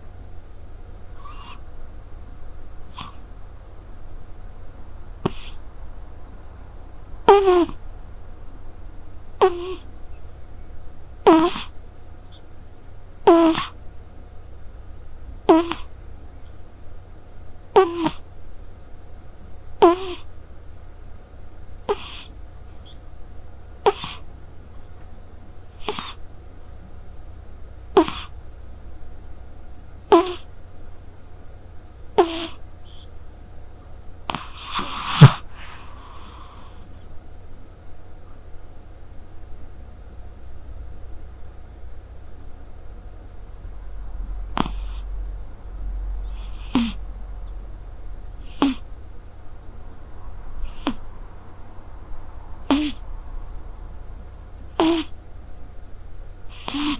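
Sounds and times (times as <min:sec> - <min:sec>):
steady low hum: 0:00.0 - 0:56.9
cat snoring: 0:01.2 - 0:01.6, 0:02.9 - 0:03.2, 0:05.2 - 0:05.6, 0:07.2 - 0:07.8, 0:09.4 - 0:09.9, 0:11.2 - 0:11.7, 0:13.3 - 0:13.8, 0:15.5 - 0:15.9, 0:17.8 - 0:18.2, 0:19.8 - 0:20.2, 0:21.9 - 0:22.3, 0:23.8 - 0:24.2, 0:25.8 - 0:26.2, 0:28.0 - 0:28.3, 0:30.1 - 0:30.4, 0:32.2 - 0:33.0, 0:34.3 - 0:36.9, 0:44.2 - 0:47.4, 0:48.3 - 0:48.9, 0:50.0 - 0:51.3, 0:52.5 - 0:53.3, 0:54.7 - 0:55.1, 0:56.5 - 0:56.9.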